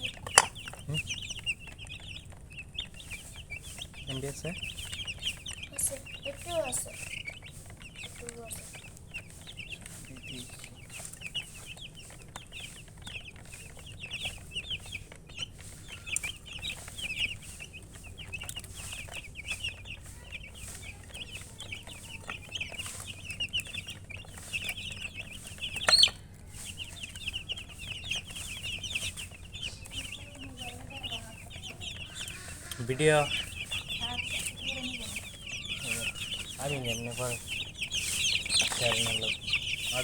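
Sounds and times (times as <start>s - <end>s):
chicks peeping: 0.0s - 40.0s
loud sharp chick call: 25.7s - 26.8s, 31.6s - 40.0s.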